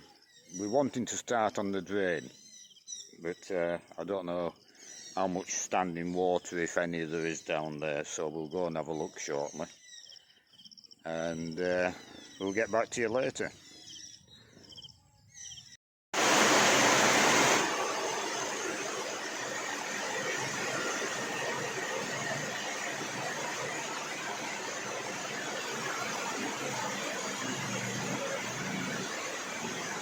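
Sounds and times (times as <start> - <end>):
heavy rain falling: 16.2 - 30.0.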